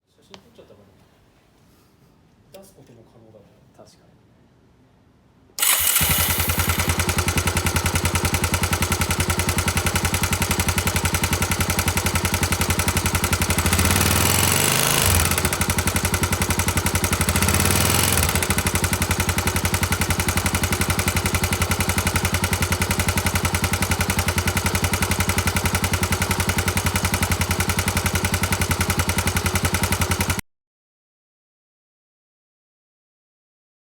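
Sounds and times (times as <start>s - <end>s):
abnormal mechanical engine noise: 5.6s - 30.4s
motorcycle engine idling and revving: 5.6s - 30.4s.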